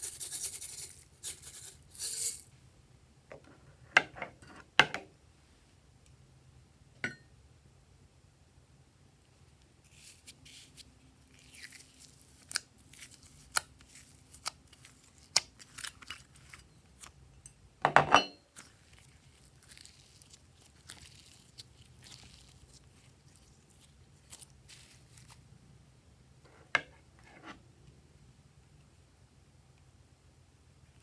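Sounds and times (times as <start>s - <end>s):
slime crackling and popping: 18.6s - 25.4s.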